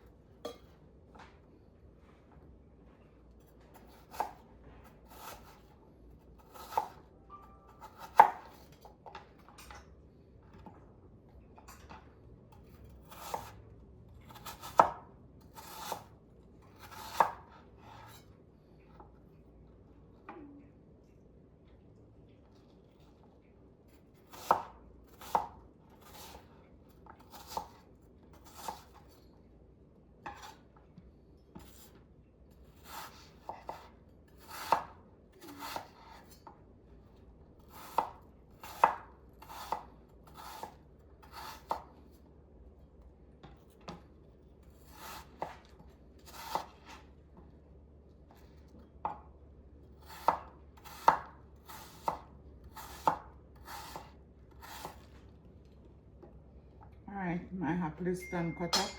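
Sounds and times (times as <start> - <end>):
knife chopping apple: 3.8 - 5.6, 6.4 - 7.0, 7.8 - 9.2, 12.5 - 13.6, 14.3 - 18.2, 24.2 - 29.2, 32.7 - 36.5, 37.6 - 42.0, 44.8 - 47.0, 50.0 - 55.1.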